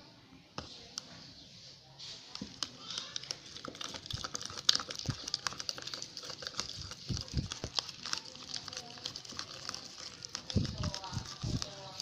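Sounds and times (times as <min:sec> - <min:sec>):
slime squeezed crackling: 0:02.4 - 0:12.0.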